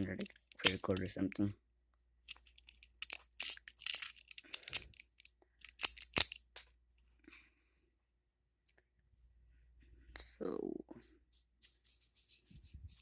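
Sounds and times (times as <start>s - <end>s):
comb clicks and scrapes: 0.0s - 1.5s, 2.3s - 7.1s.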